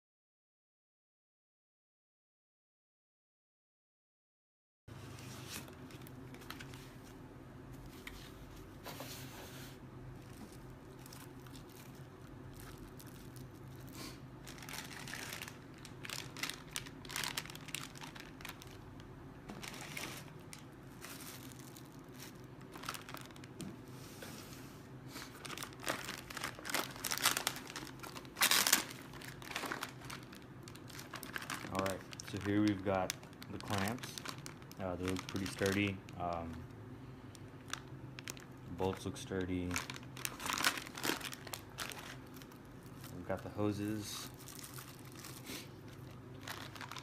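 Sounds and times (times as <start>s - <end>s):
steady low hum: 4.9s - 47.0s
packaging crinkling and tearing: 5.4s - 7.2s, 10.2s - 23.6s, 25.2s - 36.7s, 37.3s - 47.0s.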